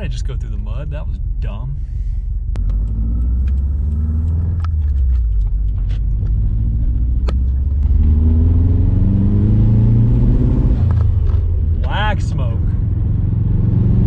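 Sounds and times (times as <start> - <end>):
car engine accelerating: 2.3 - 14.0
sharp ticks: 2.5 - 4.8.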